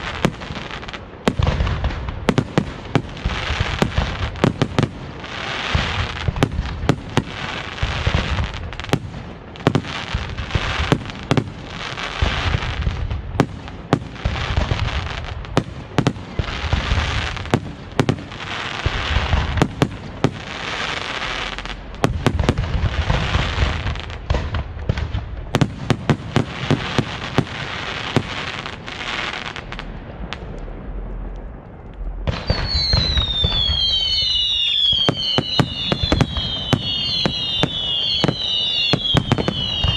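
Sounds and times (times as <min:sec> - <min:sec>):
fireworks bursts and crackling: 0:00.0 - 0:39.9
falling firework whistles: 0:32.3 - 0:39.9.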